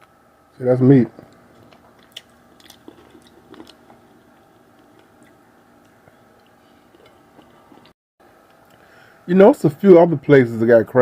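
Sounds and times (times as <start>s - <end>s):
crab shell cracking: 1.3s - 4.0s.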